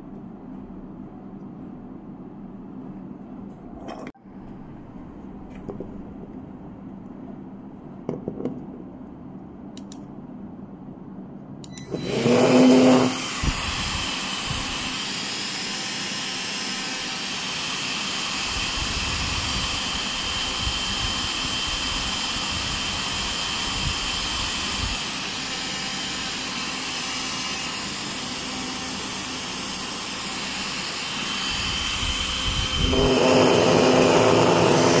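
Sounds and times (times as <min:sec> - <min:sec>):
hot air gun blower humming: 0:11.8 - 0:35.0
rushing air: 0:13.1 - 0:15.0, 0:31.4 - 0:34.9
high whine: 0:18.2 - 0:35.0.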